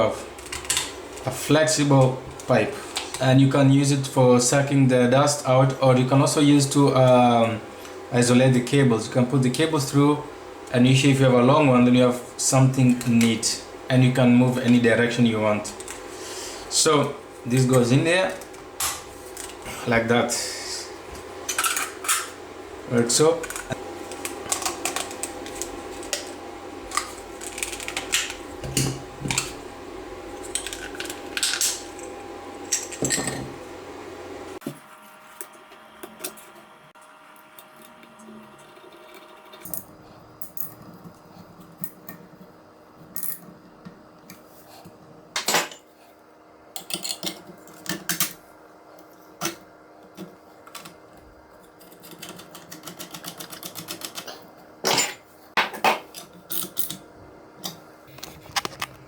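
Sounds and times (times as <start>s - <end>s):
steady hum: 0.0s - 46.8s.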